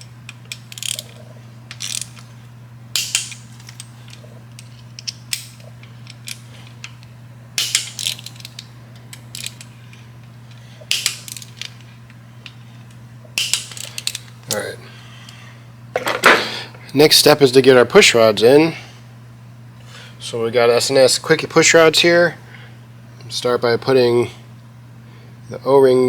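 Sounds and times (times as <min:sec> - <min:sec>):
steady low hum: 0:00.0 - 0:26.0
ratchet wrench clicking: 0:00.3 - 0:02.2, 0:03.0 - 0:07.0, 0:07.6 - 0:09.7, 0:10.5 - 0:11.9, 0:13.4 - 0:14.3.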